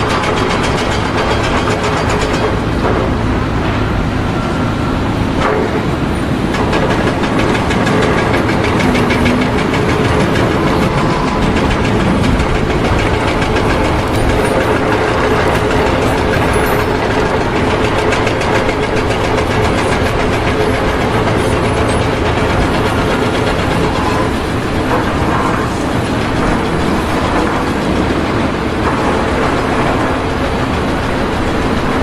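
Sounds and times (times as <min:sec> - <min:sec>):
engine running loudly: 0:00.0 - 0:32.0.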